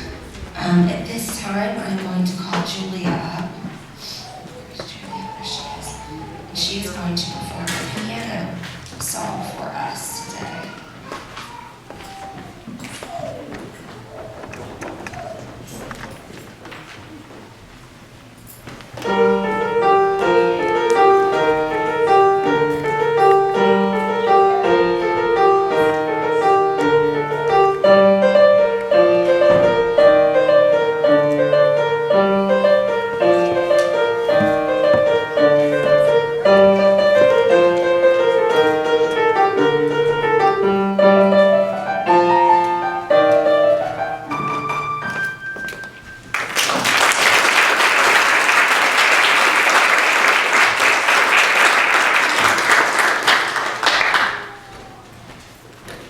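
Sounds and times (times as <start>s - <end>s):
solo piano piece: 19.0s - 46.9s
audience applause: 46.3s - 54.8s.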